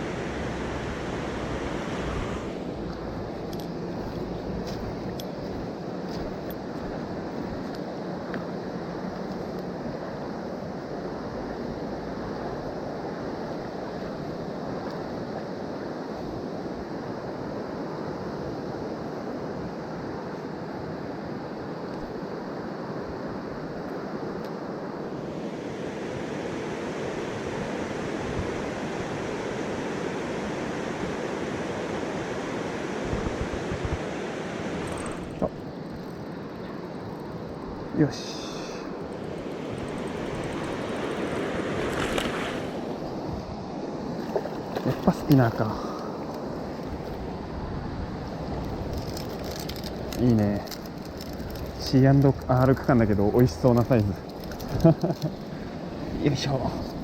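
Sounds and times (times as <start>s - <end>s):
stream water rushing: 0.0s - 9.1s, 23.6s - 57.0s.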